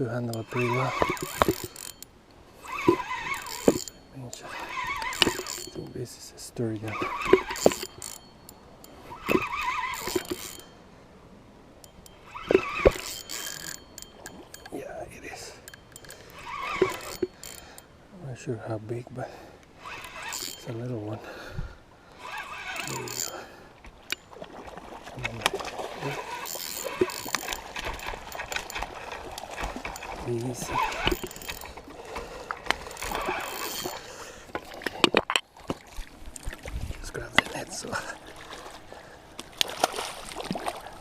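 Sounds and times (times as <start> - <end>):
fishing reel clicks: 0.2 - 5.9, 6.8 - 10.8, 11.8 - 14.8, 15.6 - 17.9, 19.8 - 20.8, 22.1 - 24.3, 25.3 - 35.0
fishing reel whine and hiss: 0.3 - 5.8, 6.8 - 10.8, 11.9 - 14.8, 15.6 - 17.9, 19.8 - 20.7, 22.1 - 24.2, 26.0 - 29.2, 29.8 - 34.3
fish splashing in water: 23.9 - 33.3, 38.1 - 41.0.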